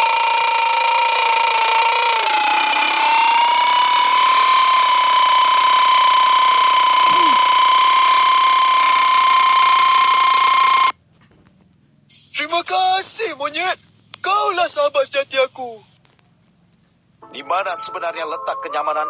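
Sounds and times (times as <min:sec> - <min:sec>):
high-pitched mechanical whine: 0:00.0 - 0:11.0, 0:12.1 - 0:16.0.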